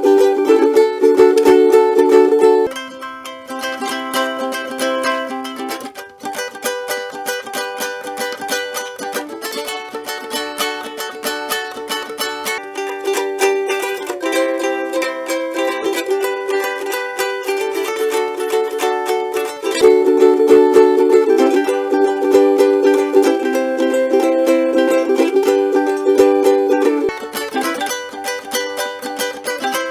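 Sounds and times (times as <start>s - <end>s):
ukulele strumming chords: 0.0s - 29.9s.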